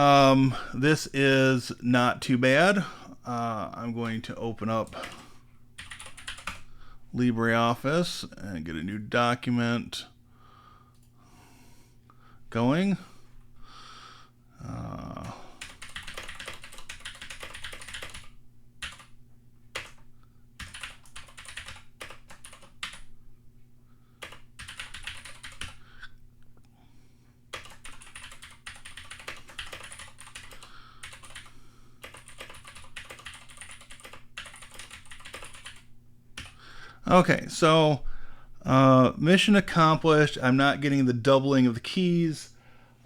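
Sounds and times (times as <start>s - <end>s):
clicky mechanical keyboard typing: 5.8s - 6.6s, 15.6s - 19.1s, 19.7s - 20.0s, 20.6s - 23.1s, 24.2s - 25.8s, 27.5s - 35.8s, 36.4s - 36.6s.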